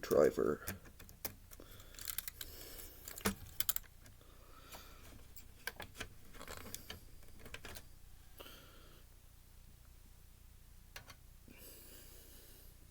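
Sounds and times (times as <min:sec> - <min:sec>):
screwdriver clicking on screws: 0:00.7 - 0:04.0.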